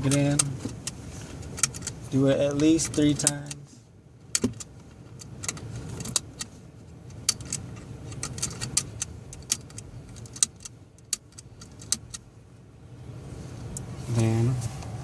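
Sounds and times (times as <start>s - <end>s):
seat belt buckle clicking: 0.0s - 3.6s, 4.3s - 12.3s
low steady hum: 0.0s - 15.0s.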